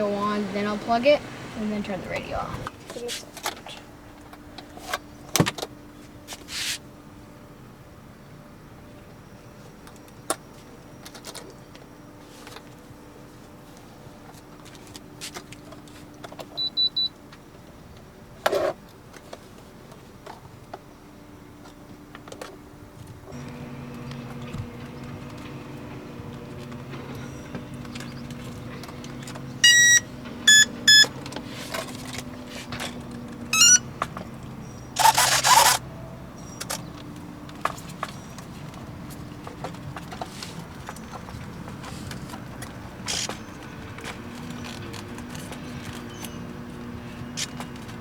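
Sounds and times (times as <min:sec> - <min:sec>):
electronic transmitter beeps: 0:16.6 - 0:17.1, 0:29.6 - 0:31.2, 0:33.5 - 0:33.8
rising electronic chirp: 0:29.6 - 0:31.1, 0:33.5 - 0:33.8.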